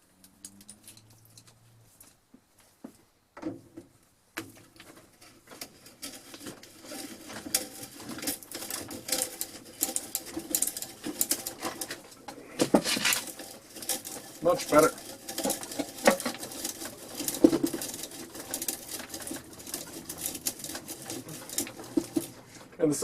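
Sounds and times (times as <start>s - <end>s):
hand-crank drill gears clicking: 6.0s - 23.0s.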